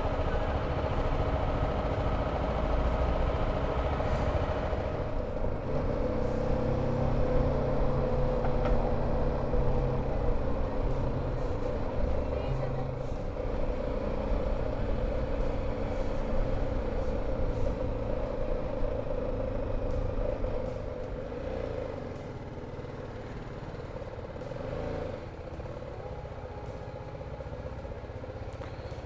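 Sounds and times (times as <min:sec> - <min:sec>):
city traffic noise: 0:00.0 - 0:29.0.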